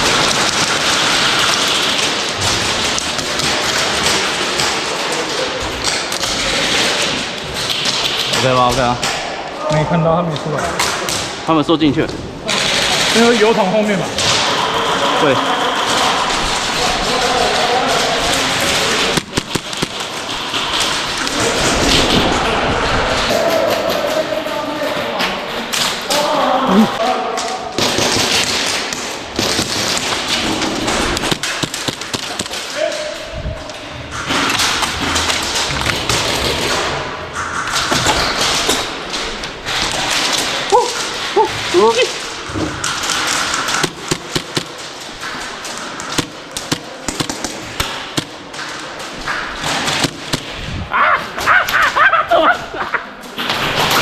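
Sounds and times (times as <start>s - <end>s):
sharp taps and thuds: 18.7s - 22.2s, 27.8s - 32.7s, 34.1s - 50.7s
airsoft gunshots and bb hits: 19.1s - 20.9s, 31.2s - 32.7s, 43.0s - 48.8s, 49.6s - 50.6s
steady rustling: 28.2s - 54.0s.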